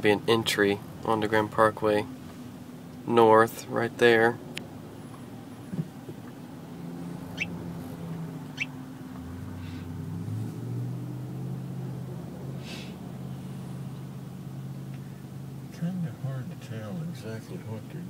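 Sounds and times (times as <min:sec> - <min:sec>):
car engine hum: 0:00.0 - 0:18.0
road noise: 0:00.0 - 0:18.0.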